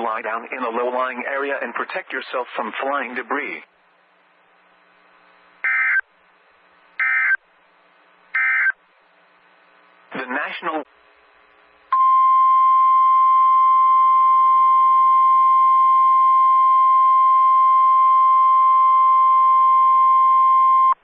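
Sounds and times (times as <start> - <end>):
steady alarm beep: 5.6 - 6.0, 7.0 - 7.4, 8.4 - 8.8, 12.0 - 21.0.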